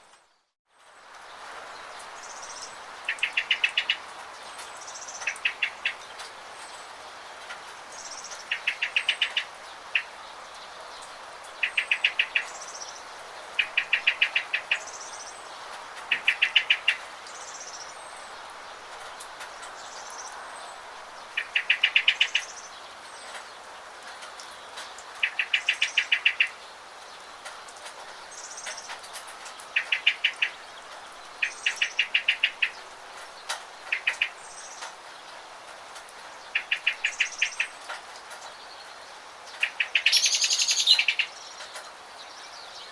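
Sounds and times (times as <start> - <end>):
rain hiss: 0.0 - 42.9
birds chirping trills: 2.0 - 7.0, 7.9 - 18.4, 24.5 - 35.4, 36.2 - 42.9
thin high bird calls: 2.2 - 4.0, 25.2 - 26.6, 29.7 - 30.7, 33.4 - 34.9, 36.5 - 37.8, 39.6 - 42.9.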